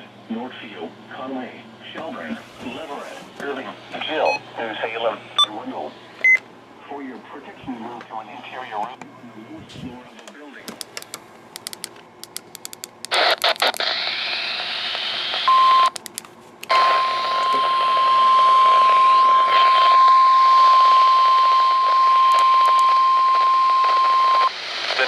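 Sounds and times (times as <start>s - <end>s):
radio hiss: 0.4s - 6.0s, 13.1s - 15.5s, 16.7s - 21.1s, 22.9s - 25.0s
steady alarm tone: 16.7s - 23.6s.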